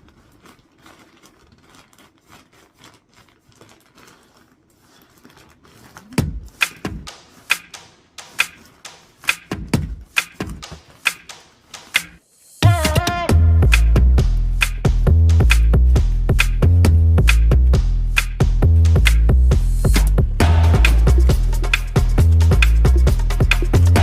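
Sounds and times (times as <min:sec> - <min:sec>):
music beat with deep thumps: 0:06.2 - 0:24.0.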